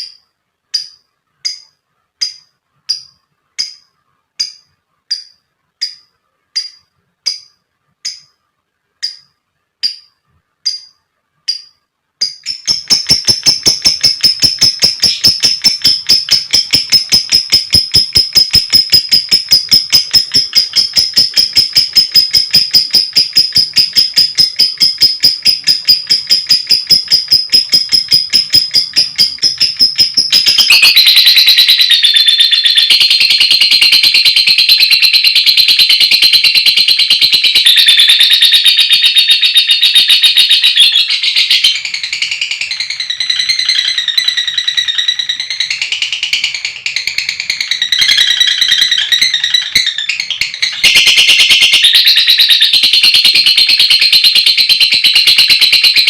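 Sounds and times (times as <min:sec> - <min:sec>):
bird chirping: 0:00.0 - 0:56.0
bird chattering trill: 0:12.2 - 0:56.0.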